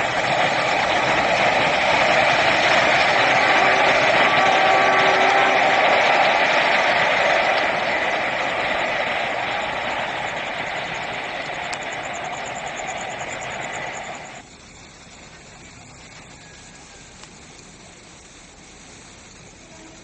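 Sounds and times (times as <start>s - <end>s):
train passing on rails: 0.0s - 14.5s, 19.4s - 20.0s.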